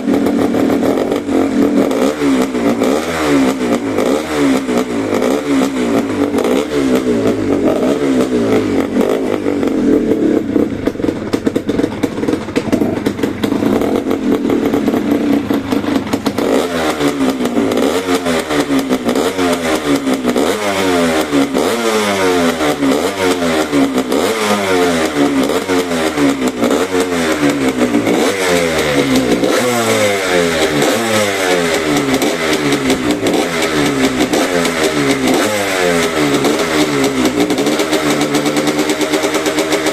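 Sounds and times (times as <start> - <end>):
two-stroke motorcycle engine revving: 0.0 - 39.9.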